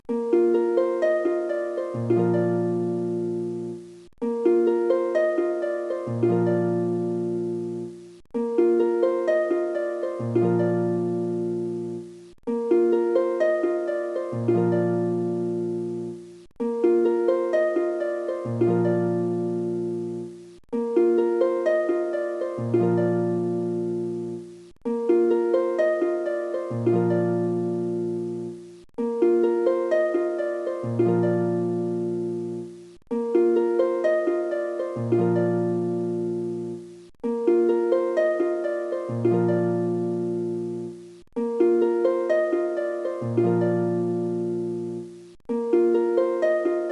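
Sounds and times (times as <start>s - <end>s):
gentle plucked-string melody: 0.0s - 46.9s.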